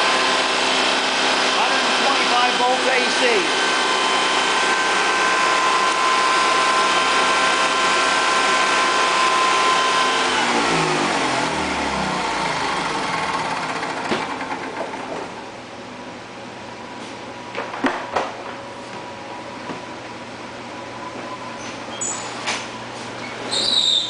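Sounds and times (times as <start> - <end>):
generator engine running and winding down: 0.0 - 16.2.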